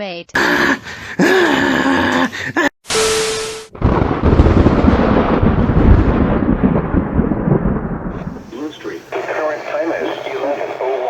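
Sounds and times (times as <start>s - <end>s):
loud deep rumble: 3.8s - 8.5s
hiss with steady tone: 8.2s - 11.0s.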